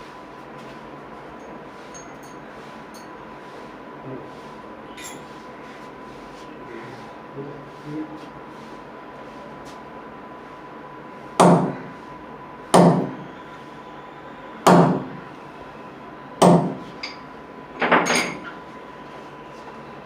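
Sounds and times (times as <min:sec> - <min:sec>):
hammer knocking: 0:11.4 - 0:11.7, 0:12.8 - 0:13.2, 0:14.7 - 0:15.1, 0:16.4 - 0:16.8.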